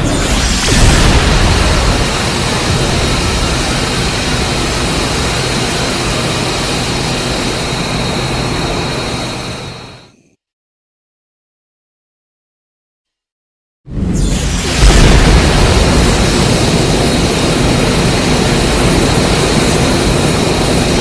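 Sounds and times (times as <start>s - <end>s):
jet-like rushing roar: 0.0s - 10.2s, 14.2s - 21.0s
thin high whine: 0.0s - 10.4s.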